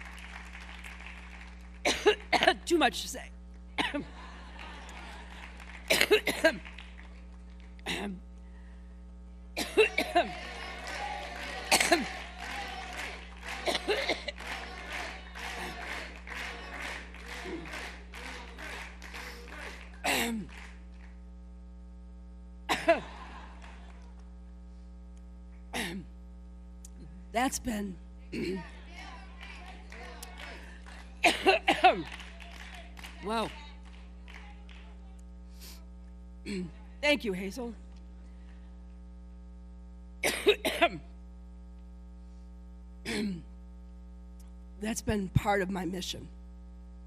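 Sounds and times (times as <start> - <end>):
mains hum: 0.0 - 47.0
woman coughing: 1.9 - 2.8, 3.8 - 4.1, 5.9 - 6.6, 7.9 - 8.2, 9.6 - 10.4, 11.6 - 12.2, 13.6 - 14.6, 20.0 - 20.5, 22.7 - 23.1, 25.8 - 26.1, 28.4 - 28.7, 31.2 - 32.1, 36.5 - 36.8, 40.2 - 41.1, 43.1 - 43.5.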